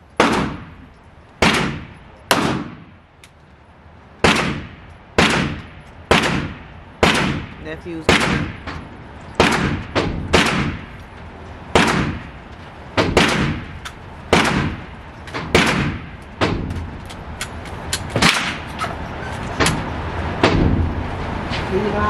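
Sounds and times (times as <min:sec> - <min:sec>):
gunshots with echo: 0:00.2 - 0:00.8, 0:01.4 - 0:02.9, 0:04.2 - 0:08.7, 0:09.4 - 0:11.0, 0:11.7 - 0:12.4, 0:13.0 - 0:13.7, 0:14.3 - 0:14.9, 0:15.5 - 0:16.7.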